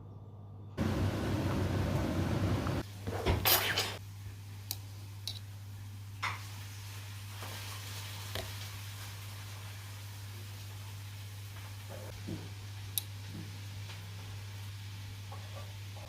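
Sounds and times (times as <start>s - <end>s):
steady low hum: 0.0s - 2.8s
dishes and utensils clattering: 3.1s - 4.0s.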